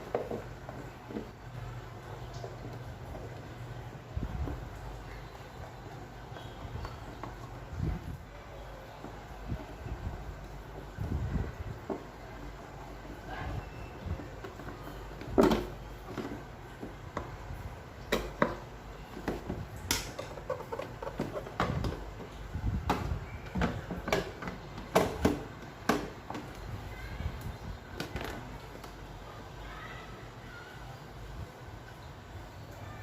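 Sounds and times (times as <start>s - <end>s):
plastic parts knocking and clicking: 14.2s - 26.8s.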